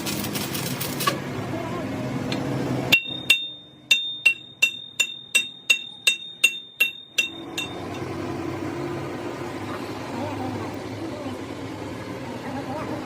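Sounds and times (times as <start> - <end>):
hammer striking steel: 2.9 - 8.1.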